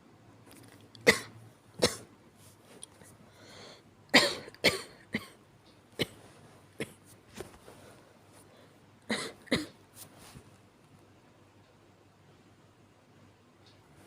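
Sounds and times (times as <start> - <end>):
person coughing weakly: 4.2 - 5.4, 9.1 - 9.8.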